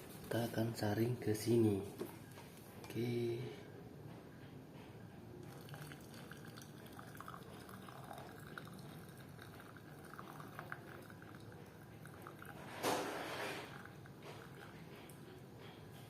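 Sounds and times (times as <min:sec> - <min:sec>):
liquid trickling through strainer: 0:05.4 - 0:15.2.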